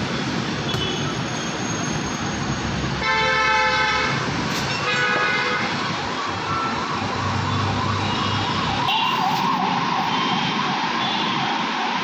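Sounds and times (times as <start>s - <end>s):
steady traffic noise: 0.0s - 12.0s
vehicle horns: 3.0s - 5.8s.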